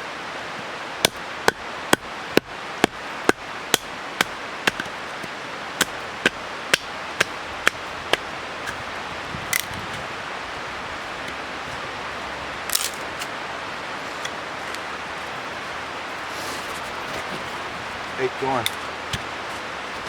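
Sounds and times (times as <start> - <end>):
river rushing: 0.0 - 20.0
sharp knocks: 1.0 - 4.9.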